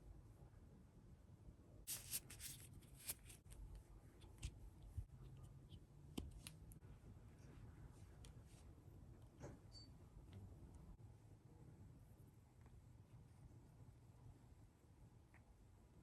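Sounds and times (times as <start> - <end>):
packaging rustling and crinkling: 1.9 - 3.5.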